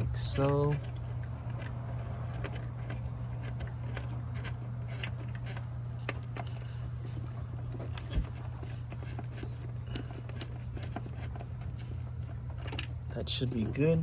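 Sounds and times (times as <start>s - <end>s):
wire handling clicks and ticks: 0.0s - 6.6s
steady low hum: 0.0s - 14.0s.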